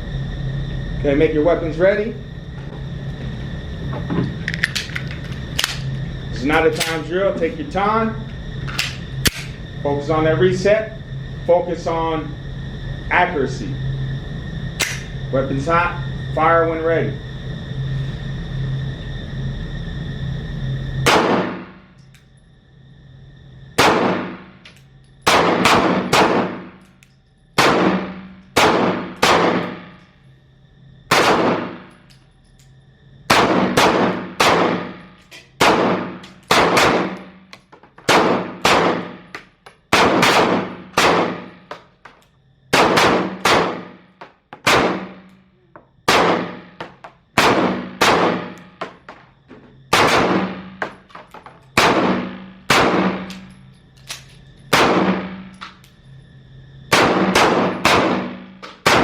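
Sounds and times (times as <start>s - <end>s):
pistol shots echoing: 21.1s - 21.6s, 23.8s - 24.4s, 25.3s - 26.8s, 27.6s - 29.9s, 31.1s - 31.9s, 33.3s - 35.0s, 35.6s - 37.3s, 38.0s - 39.3s, 39.9s - 41.5s, 42.7s - 44.0s, 44.6s - 45.2s, 46.1s - 49.0s, 49.9s - 50.9s, 51.8s - 53.4s, 54.7s - 55.3s, 56.9s - 59.0s.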